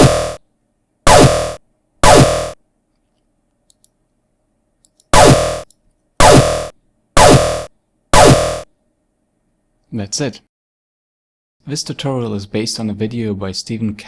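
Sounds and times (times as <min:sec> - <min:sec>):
synthesized laser blaster zaps: 0:00.0 - 0:00.4, 0:01.1 - 0:02.6, 0:05.2 - 0:08.6.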